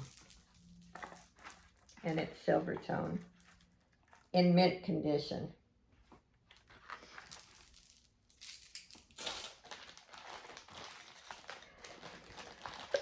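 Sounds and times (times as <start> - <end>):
plastic bag crinkling: 0.0 - 4.4, 6.5 - 13.0.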